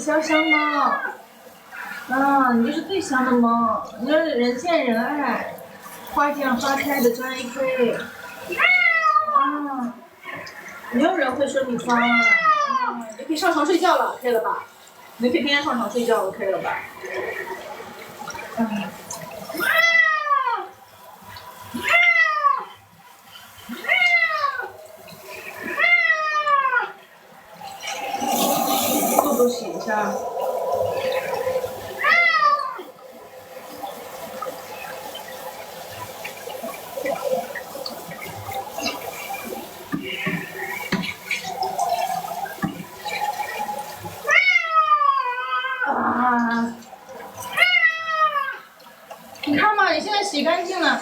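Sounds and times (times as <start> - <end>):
water splashing and scrubbing fur: 0.0 - 51.0
cat meowing loudly: 8.5 - 9.6, 19.6 - 20.7, 21.8 - 22.8, 23.7 - 24.8, 32.0 - 32.9, 44.2 - 46.0, 47.5 - 48.6.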